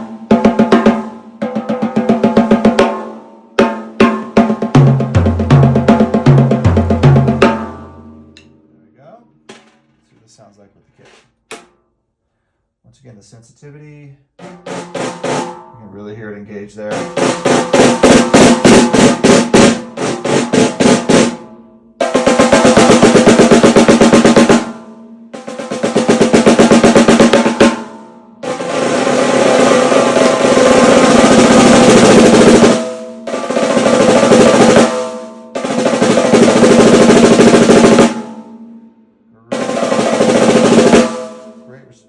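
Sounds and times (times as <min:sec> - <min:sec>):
snare drum rolls: 0:00.0 - 0:08.0, 0:14.4 - 0:15.7, 0:16.9 - 0:21.4, 0:22.0 - 0:38.5, 0:39.5 - 0:41.7.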